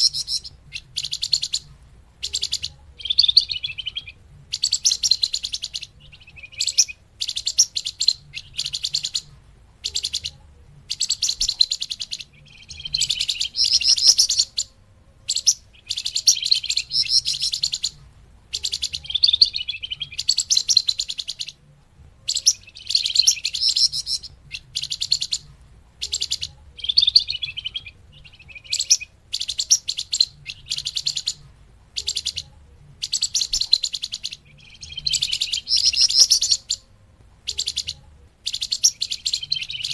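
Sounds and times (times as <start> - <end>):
songbird chattering chirps: 0.0 - 39.9.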